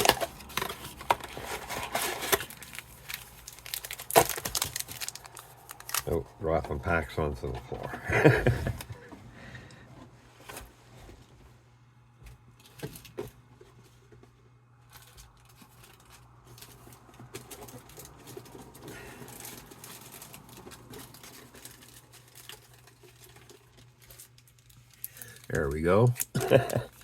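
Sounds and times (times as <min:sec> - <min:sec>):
low hum: 0:00.0 - 0:10.3
cardboard packs rustling: 0:00.0 - 0:11.4, 0:12.6 - 0:27.0.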